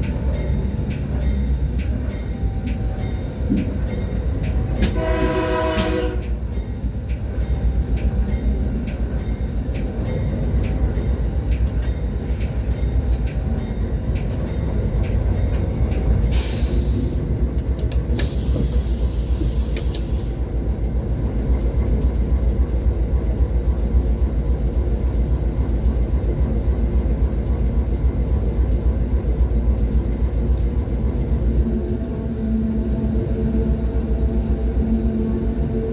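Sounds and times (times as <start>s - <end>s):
train wheel clicks: 0.0s - 20.4s, 21.0s - 33.3s
train rumbling: 0.0s - 35.9s.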